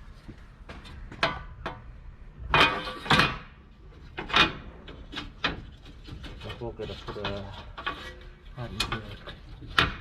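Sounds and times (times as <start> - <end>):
metal parts clunking and rattling: 2.5 - 10.0.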